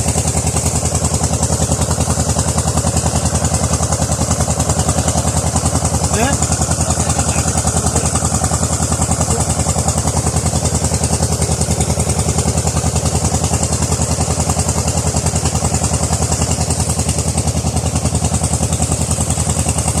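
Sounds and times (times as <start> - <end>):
small engine idling: 0.0 - 20.0.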